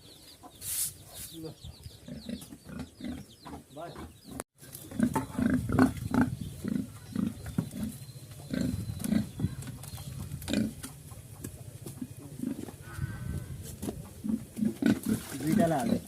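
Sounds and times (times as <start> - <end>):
pigs grunting: 2.0 - 3.3, 4.8 - 9.7, 10.3 - 11.0, 12.0 - 16.0.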